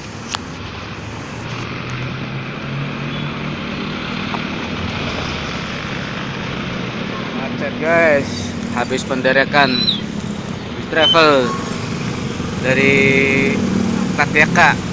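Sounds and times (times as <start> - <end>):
vehicle engine hum: 0.0 - 14.9
traffic hiss: 7.4 - 14.9.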